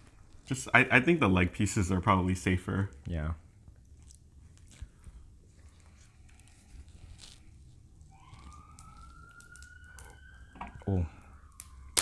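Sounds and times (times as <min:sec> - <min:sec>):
faint siren wail: 0:07.0 - 0:12.0
crab shells cracking: 0:08.4 - 0:10.2, 0:11.5 - 0:12.0.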